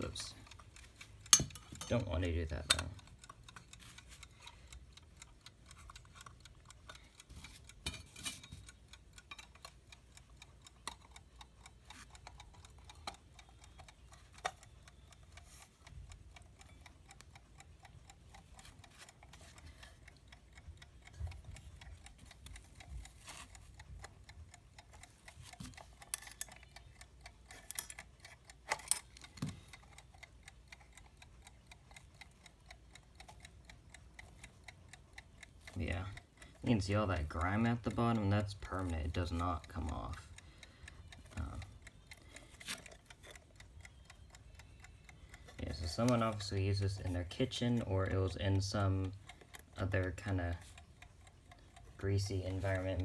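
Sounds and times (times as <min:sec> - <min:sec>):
clicks and taps of handling: 0:00.0 - 0:04.6
clock ticking: 0:00.0 - 0:53.0.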